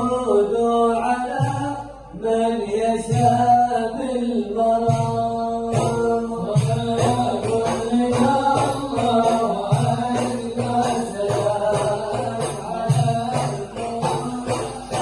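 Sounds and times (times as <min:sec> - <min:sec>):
frame drum beats: 0:01.3 - 0:01.9, 0:03.0 - 0:03.8, 0:04.8 - 0:15.0
jingling percussion: 0:04.9 - 0:15.0.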